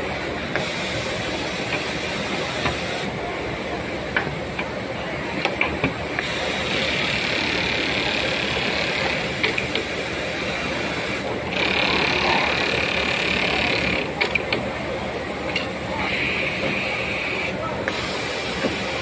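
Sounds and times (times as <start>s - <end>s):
sewing machine running: 11.5s - 14.1s.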